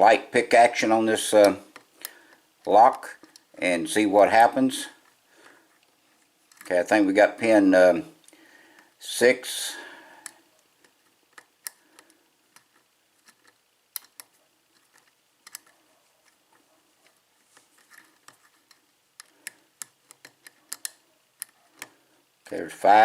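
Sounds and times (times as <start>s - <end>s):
lock pick clicking on pins: 10.2s - 15.8s, 17.9s - 21.9s.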